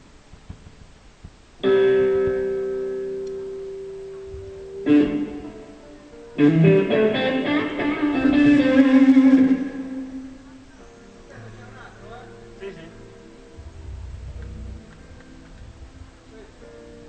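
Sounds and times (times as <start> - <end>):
amplified chord ringing: 1.6 - 11.2
band playing: 6.4 - 10.5.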